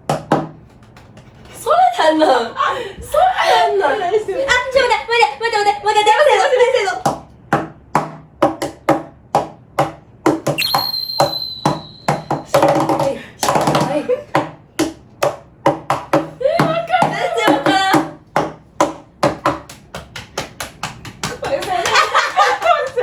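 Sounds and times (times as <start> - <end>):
high steady tone: 10.6 - 12.8
hands tapping on a desk: 13.4 - 21.8.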